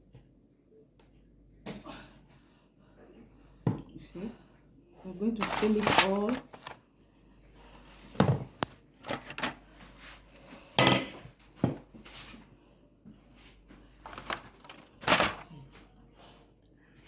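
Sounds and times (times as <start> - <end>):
spoon knocking and scraping bowl: 10.8 - 11.3.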